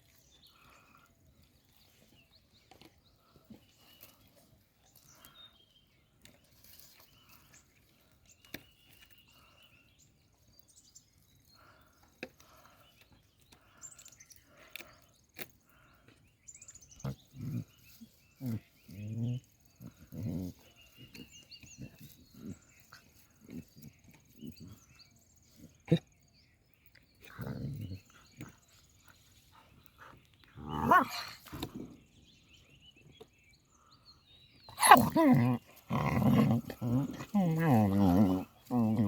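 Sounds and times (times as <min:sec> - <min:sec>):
puppy growling: 0:30.5 - 0:31.9, 0:34.7 - 0:39.0.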